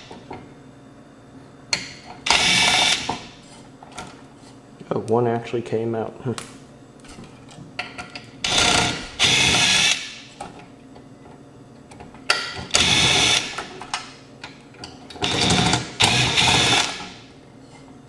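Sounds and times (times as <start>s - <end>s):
electric drill motor whining: 2.3s - 3.1s, 8.4s - 10.1s, 12.7s - 13.6s, 15.2s - 17.1s.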